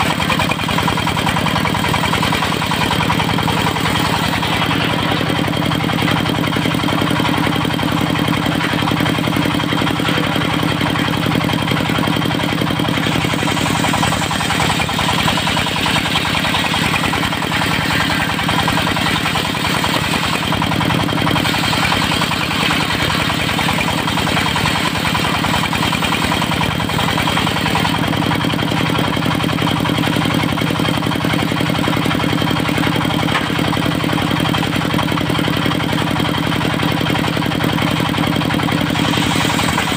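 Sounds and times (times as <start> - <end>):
sawmill engine running: 0.0 - 39.9
saw blade hissing through wood: 13.0 - 20.5, 38.8 - 39.9.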